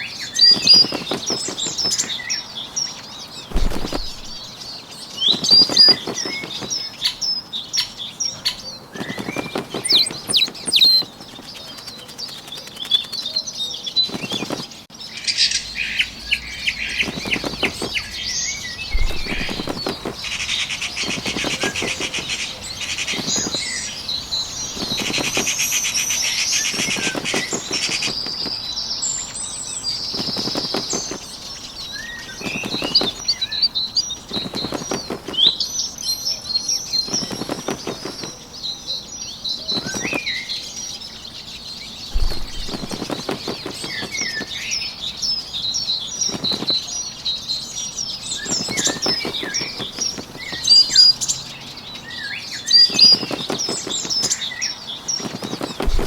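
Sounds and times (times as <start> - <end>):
small bird wings fluttering: 0.0 - 14.9, 16.2 - 51.5, 52.5 - 56.0
birds chirping and singing: 0.0 - 56.0.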